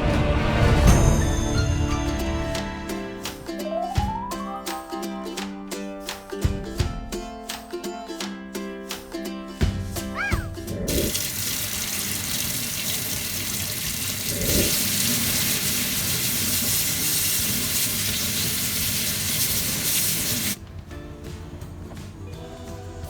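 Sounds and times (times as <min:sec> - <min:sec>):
water running: 0:09.7 - 0:20.6.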